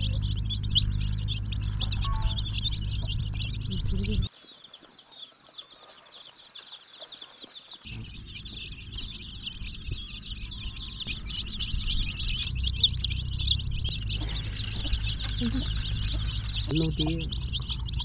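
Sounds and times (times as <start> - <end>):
low steady hum: 0.0 - 4.3, 7.9 - 18.0
chicks peeping: 0.0 - 18.0.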